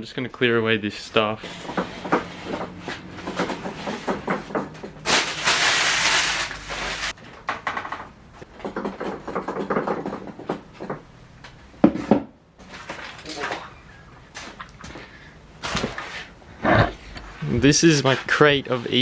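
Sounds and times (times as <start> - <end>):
objects knocking and clattering: 1.4 - 5.7, 6.8 - 15.0.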